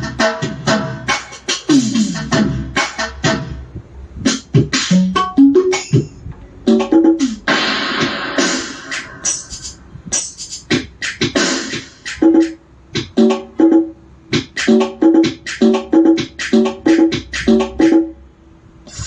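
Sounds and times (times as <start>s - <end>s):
drum and cymbal hits: 0.0s - 18.1s.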